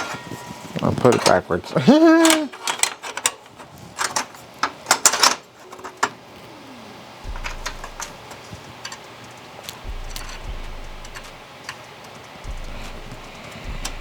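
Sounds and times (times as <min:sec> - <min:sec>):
metal parts clicking and clinking: 0:02.2 - 0:06.2
low rumble: 0:07.2 - 0:08.2, 0:09.8 - 0:11.4, 0:12.4 - 0:14.0
sharp knocks: 0:07.2 - 0:08.2, 0:09.8 - 0:11.4, 0:12.4 - 0:14.0.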